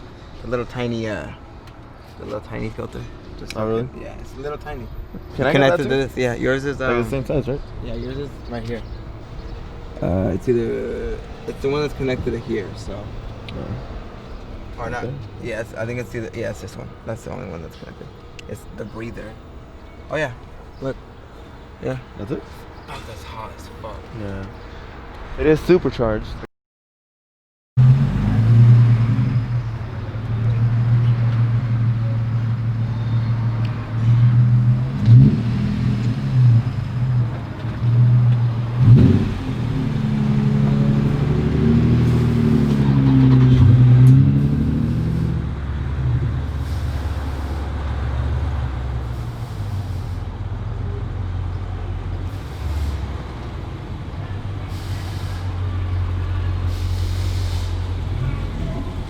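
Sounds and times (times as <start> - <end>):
car engine revving: 7.8 - 19.5, 27.8 - 59.0.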